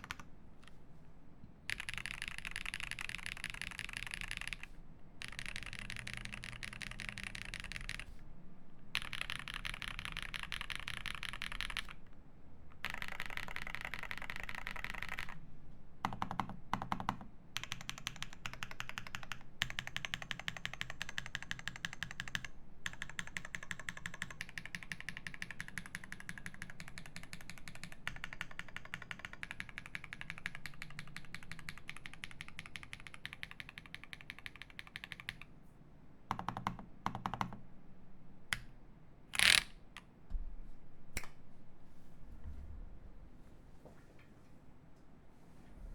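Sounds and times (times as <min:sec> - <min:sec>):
rapid typing on mechanical keyboard: 0:00.0 - 0:00.3, 0:01.7 - 0:08.1, 0:08.9 - 0:12.0, 0:12.7 - 0:15.4, 0:16.0 - 0:35.5, 0:36.3 - 0:37.6.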